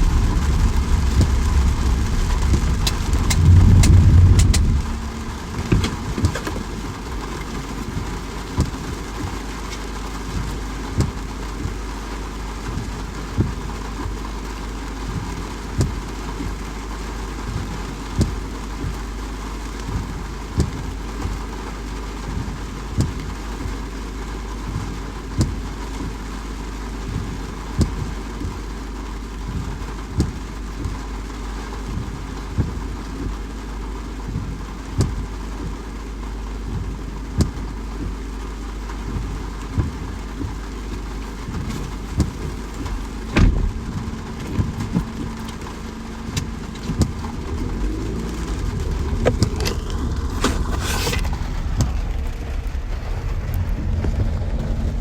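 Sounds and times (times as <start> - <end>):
heavy drops striking surface: 0.0 - 7.3
constant low rumble: 0.0 - 55.0
steady rain falling: 0.0 - 55.0.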